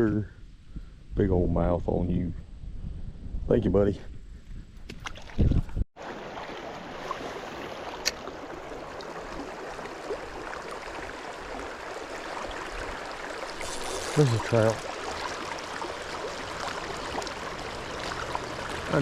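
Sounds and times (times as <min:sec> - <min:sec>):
river water rushing: 0:06.0 - 0:19.0.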